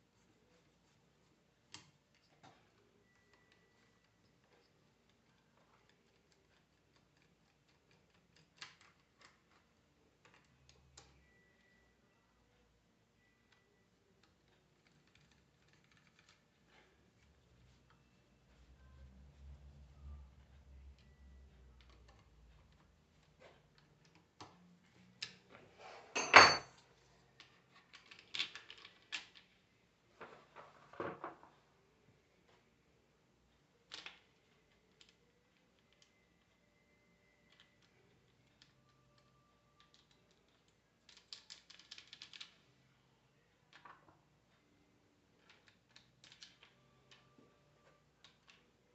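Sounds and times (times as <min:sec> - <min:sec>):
metal tools clicking and clanking: 0:26.1 - 0:26.8.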